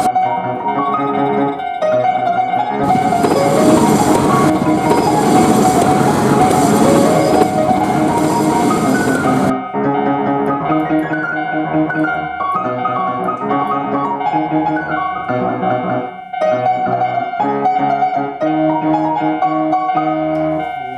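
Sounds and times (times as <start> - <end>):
fast piano music: 0.0 - 20.7
steady held tone: 2.8 - 9.5.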